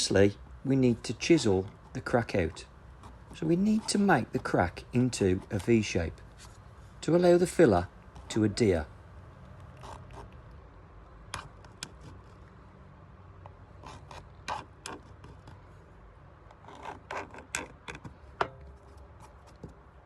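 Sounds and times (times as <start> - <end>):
chisel scraping plastic: 1.4 - 6.6, 11.3 - 12.4, 16.4 - 19.8.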